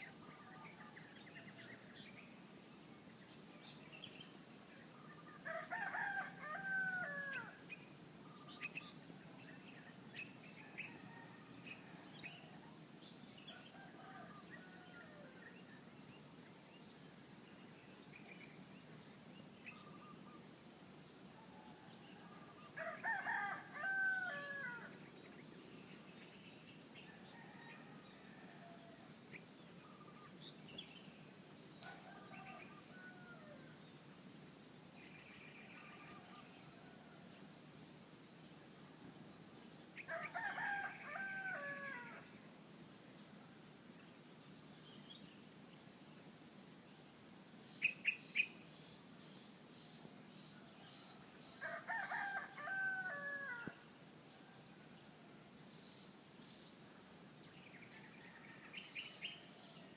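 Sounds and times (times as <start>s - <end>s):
rooster crowing: 5.4s - 7.6s, 13.7s - 15.3s, 22.2s - 25.0s, 27.3s - 29.0s, 31.8s - 33.6s, 40.1s - 42.2s, 51.6s - 53.8s.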